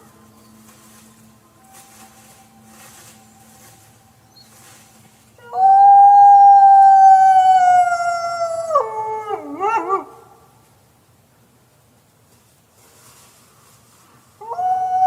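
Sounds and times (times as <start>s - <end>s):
dog howling: 5.4s - 10.3s.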